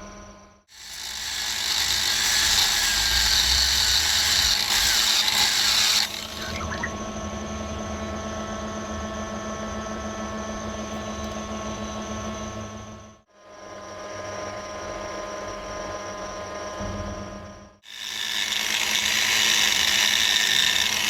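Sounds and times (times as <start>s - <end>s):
stone grinding against wheel: 0.7s - 6.9s, 17.9s - 21.0s
motor humming: 0.7s - 7.4s.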